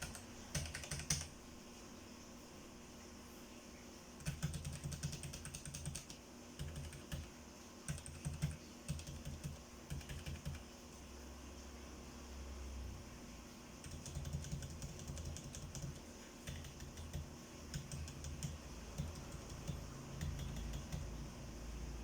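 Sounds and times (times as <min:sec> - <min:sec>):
mechanical keyboard typing: 0:00.0 - 0:01.3, 0:04.2 - 0:07.3, 0:07.9 - 0:10.7, 0:13.8 - 0:21.2.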